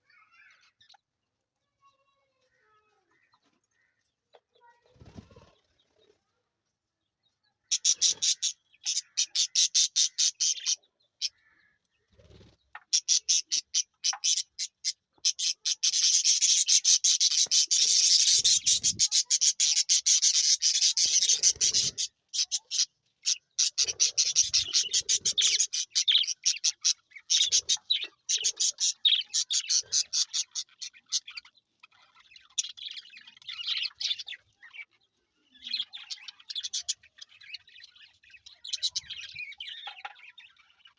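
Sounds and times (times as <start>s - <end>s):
budgerigars chirping: 7.7s - 11.7s, 12.8s - 34.9s, 35.6s - 40.9s.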